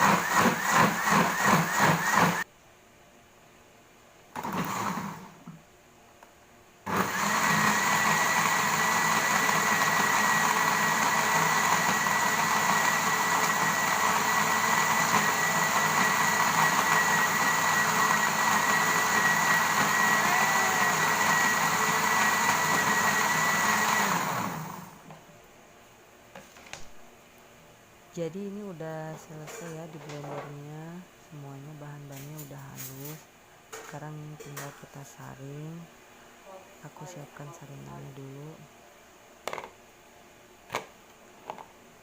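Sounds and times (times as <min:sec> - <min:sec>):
blender motor spinning down: 0:00.0 - 0:02.4, 0:04.4 - 0:05.3, 0:06.9 - 0:25.0
blender running with high whine: 0:00.0 - 0:02.5, 0:04.4 - 0:05.6, 0:06.9 - 0:25.0.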